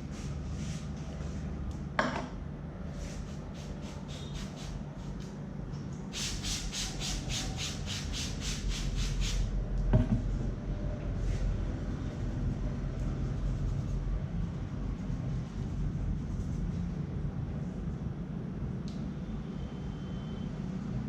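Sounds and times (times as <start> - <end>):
low hum: 9.4 - 21.0.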